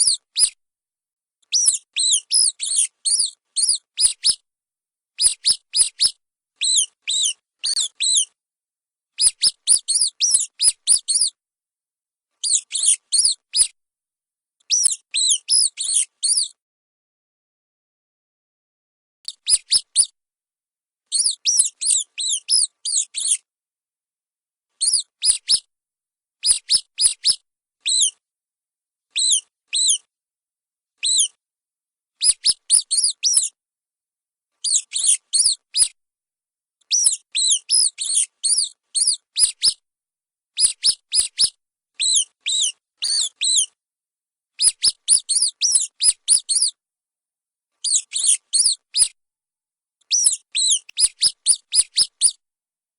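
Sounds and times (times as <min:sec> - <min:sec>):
mice squeaking: 0:00.0 - 0:00.6, 0:01.5 - 0:04.4, 0:05.2 - 0:08.4, 0:09.2 - 0:11.4, 0:12.4 - 0:13.8, 0:14.7 - 0:16.6, 0:19.3 - 0:20.1, 0:21.1 - 0:23.4, 0:24.8 - 0:25.7, 0:26.4 - 0:28.2, 0:29.2 - 0:30.1, 0:31.0 - 0:31.4, 0:32.2 - 0:33.6, 0:34.6 - 0:36.0, 0:36.9 - 0:39.8, 0:40.6 - 0:43.8, 0:44.6 - 0:46.8, 0:47.8 - 0:49.2, 0:50.1 - 0:52.4.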